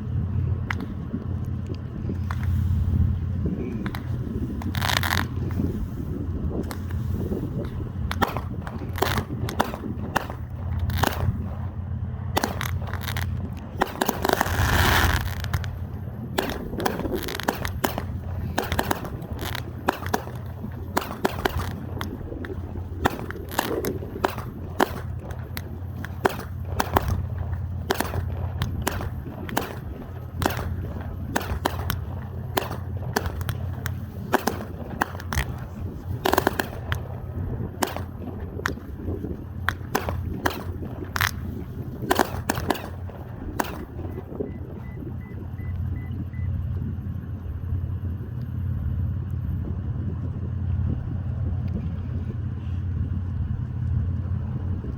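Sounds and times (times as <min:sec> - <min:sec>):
fireworks cracking and banging: 0:02.2 - 0:44.8
fireworks hissing burst: 0:12.4 - 0:15.8, 0:16.4 - 0:25.6.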